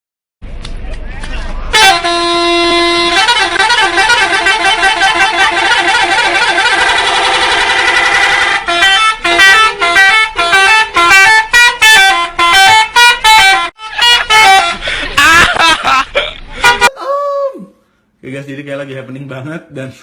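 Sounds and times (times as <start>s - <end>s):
multi-tone musical bus horn: 1.7s - 16.9s.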